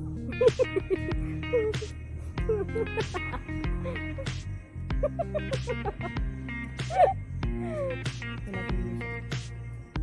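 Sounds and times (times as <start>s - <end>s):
background music with beat: 0.0s - 10.0s.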